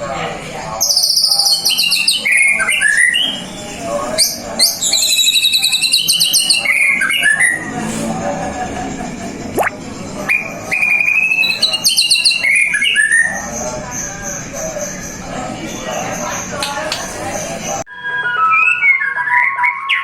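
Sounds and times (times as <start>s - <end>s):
bird singing trills and whistles: 0.8s - 7.7s, 10.3s - 16.5s, 18.0s - 20.0s.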